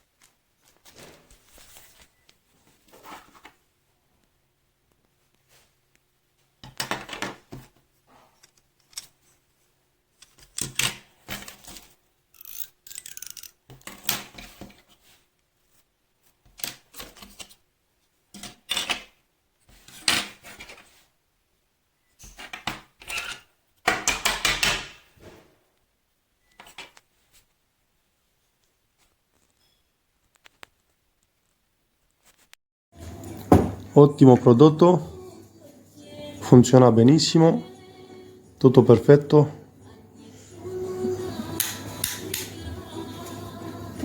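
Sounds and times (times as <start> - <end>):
plastic parts clicking and clattering: 6.6 - 7.7, 8.4 - 9.2, 10.2 - 14.8.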